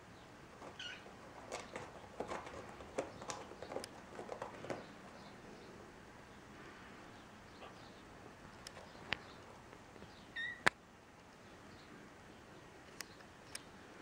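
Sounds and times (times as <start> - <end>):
kittens scrabbling on bedding: 0.5 - 5.3.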